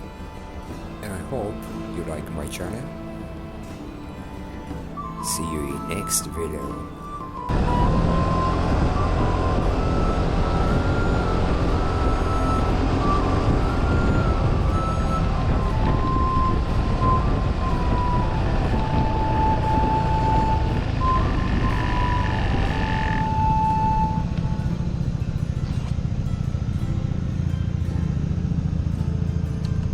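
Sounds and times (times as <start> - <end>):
thin high held notes: 0.0 - 29.9
wind rush: 7.5 - 27.0
scooter engine running: 7.5 - 29.9.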